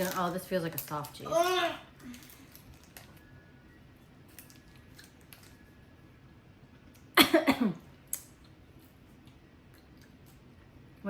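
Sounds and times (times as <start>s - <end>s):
person coughing: 7.2s - 7.9s.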